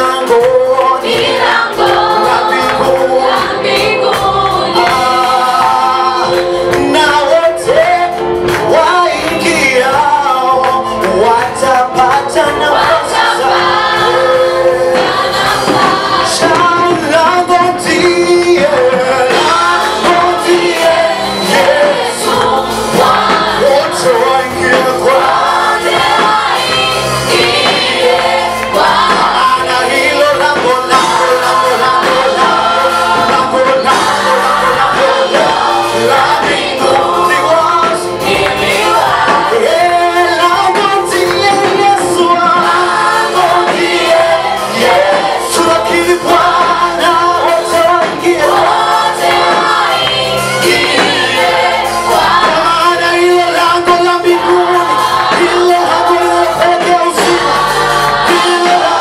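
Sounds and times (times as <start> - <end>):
congregation singing gospel song: 0.0 - 59.0
gospel music: 0.0 - 59.0.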